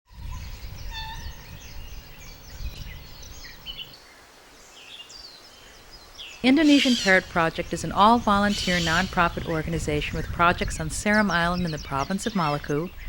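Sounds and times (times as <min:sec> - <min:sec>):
birds whistling and chirping: 0:00.1 - 0:04.2, 0:04.8 - 0:10.5.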